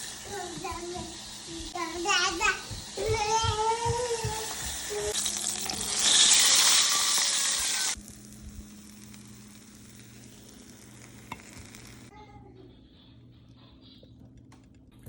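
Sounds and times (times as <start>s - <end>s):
food deep-frying in oil: 4.1s - 12.1s.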